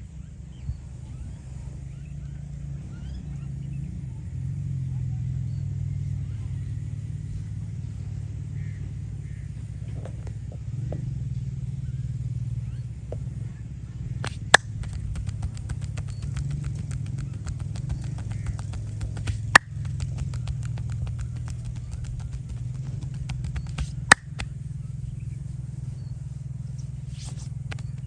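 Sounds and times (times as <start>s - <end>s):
hand percussion strokes on head: 14.2s - 24.5s, 26.7s - 28.0s
loud sharp crack: 17.3s - 21.4s, 23.7s - 24.5s.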